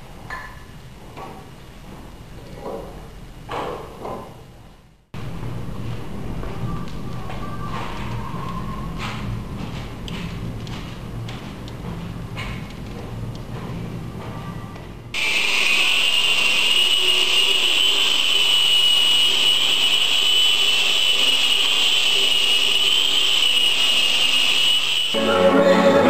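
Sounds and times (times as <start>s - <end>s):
power tool whining: 15.2s - 26.0s.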